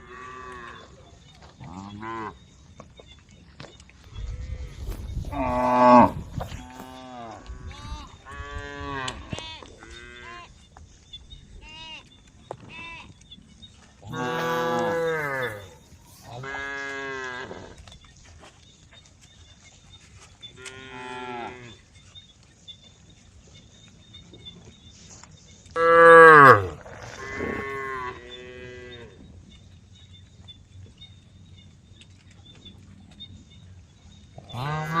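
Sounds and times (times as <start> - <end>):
cows mooing: 5.3 - 7.4, 14.1 - 17.8, 25.8 - 29.2, 34.5 - 35.0.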